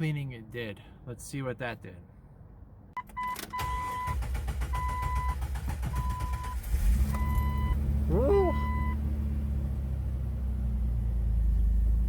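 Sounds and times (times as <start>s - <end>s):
dashboard warning chime beeping: 3.0s - 7.8s, 8.4s - 9.0s
car engine starting and running: 3.0s - 12.0s.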